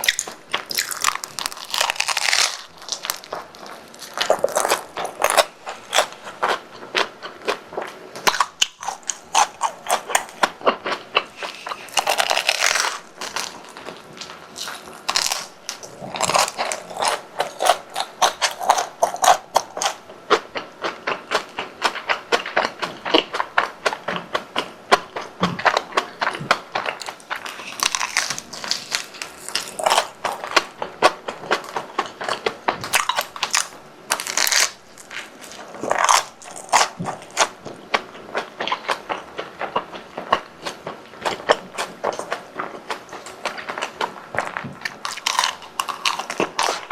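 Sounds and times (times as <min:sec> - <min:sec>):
crunching and chewing fried food: 0:00.0 - 0:46.9.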